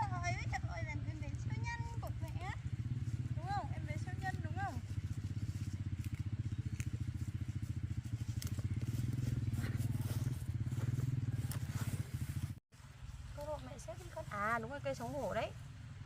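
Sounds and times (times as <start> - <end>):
small engine running: 0.0 - 12.6.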